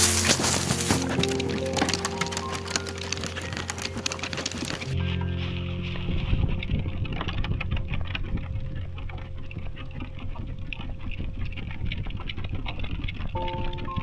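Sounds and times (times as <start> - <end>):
footsteps crunching on trail: 0.0 - 13.7
low rumble: 4.8 - 14.0.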